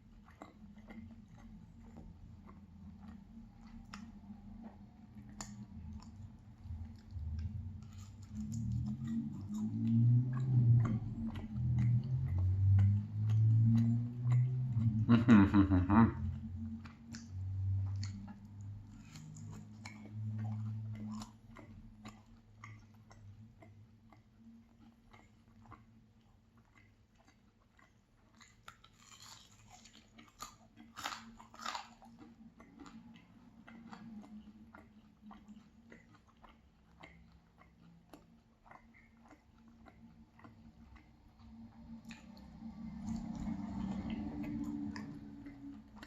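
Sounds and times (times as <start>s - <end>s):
steady low hum: 0.0s - 26.1s, 38.5s - 46.0s
chewing and crunching: 0.0s - 46.0s.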